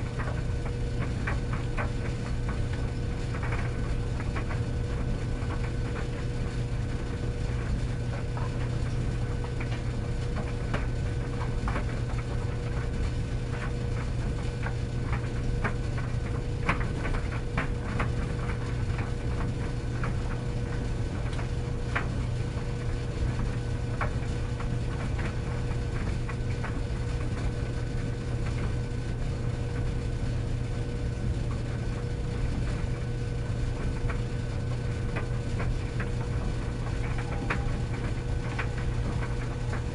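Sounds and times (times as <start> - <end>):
tumble dryer motor hum: 0.0 - 39.9.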